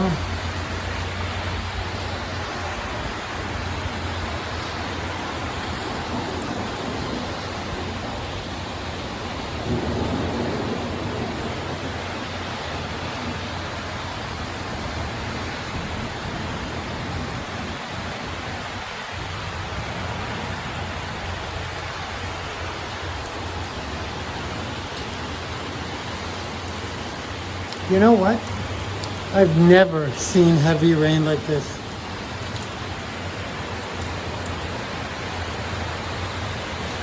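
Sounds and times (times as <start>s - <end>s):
thunder rumble: 0.0s - 18.4s
torrential rain pouring: 0.0s - 37.0s.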